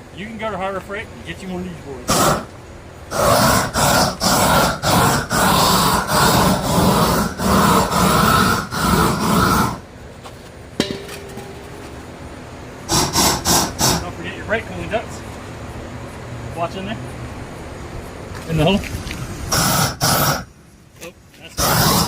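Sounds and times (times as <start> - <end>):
gas torch burning: 2.1 - 10.0, 10.8 - 15.1, 17.7 - 20.6, 21.5 - 22.0.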